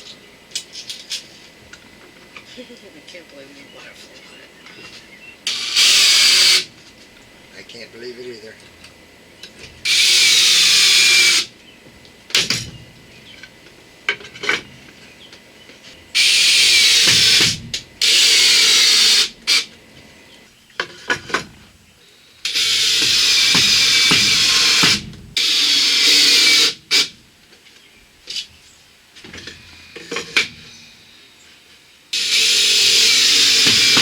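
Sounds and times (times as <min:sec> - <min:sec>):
power drill driving screws: 0:05.5 - 0:06.7, 0:09.8 - 0:11.5, 0:16.2 - 0:19.7, 0:22.4 - 0:27.1, 0:32.1 - 0:34.0.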